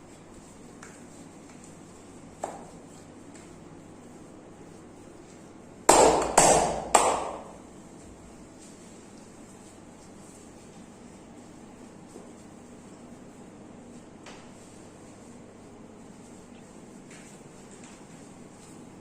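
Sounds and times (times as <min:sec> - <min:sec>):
sharp hand slaps: 0:05.9 - 0:07.5.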